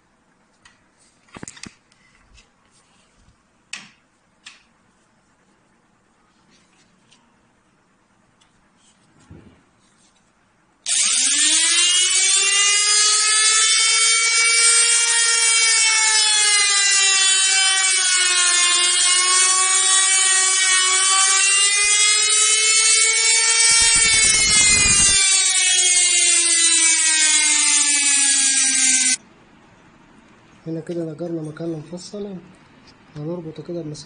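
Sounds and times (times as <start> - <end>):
trim router cutting wood: 10.9 - 29.2.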